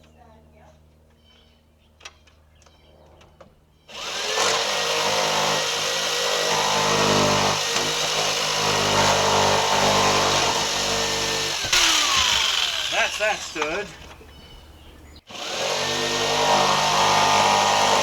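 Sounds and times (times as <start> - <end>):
electric power saw cutting wood: 3.9 - 14.2, 15.3 - 18.0.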